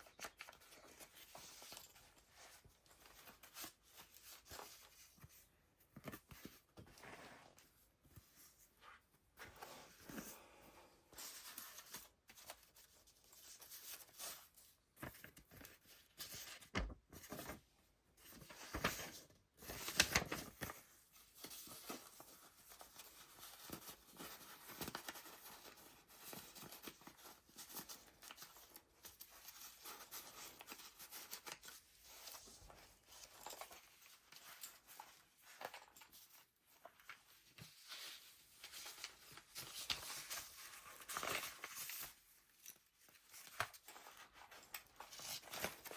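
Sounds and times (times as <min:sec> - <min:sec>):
pages flipping: 0:00.0 - 0:08.5, 0:18.3 - 0:27.1, 0:29.9 - 0:45.9
paper pages rustling: 0:00.0 - 0:10.5, 0:18.2 - 0:45.9.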